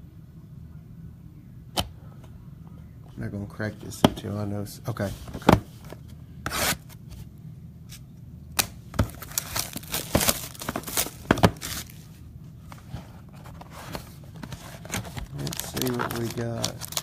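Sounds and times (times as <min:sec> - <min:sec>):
wrapping torn and crinkled: 0:09.1 - 0:12.0, 0:14.5 - 0:17.0.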